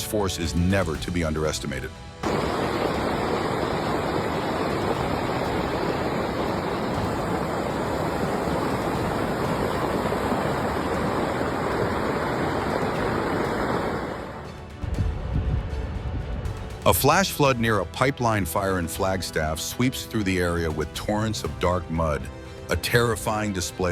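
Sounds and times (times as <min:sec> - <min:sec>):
floodwater rushing: 0:02.2 - 0:14.8.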